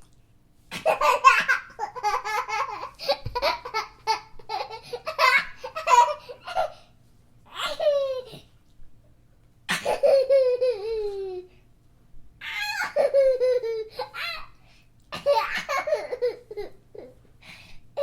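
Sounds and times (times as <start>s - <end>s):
baby laughing: 0.7s - 6.8s, 7.5s - 8.5s, 9.7s - 11.5s, 12.4s - 14.5s, 15.1s - 17.2s.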